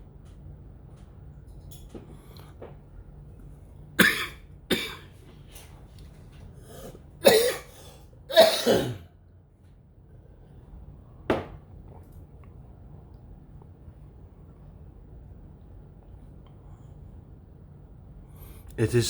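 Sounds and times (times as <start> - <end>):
person coughing: 4.0 - 5.1, 7.2 - 9.1.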